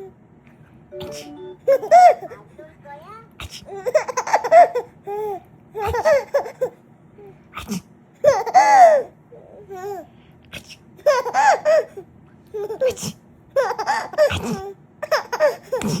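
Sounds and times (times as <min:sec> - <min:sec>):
baby giggling: 0:01.0 - 0:02.6, 0:03.6 - 0:06.8, 0:08.2 - 0:10.1, 0:11.0 - 0:13.0, 0:13.6 - 0:16.0.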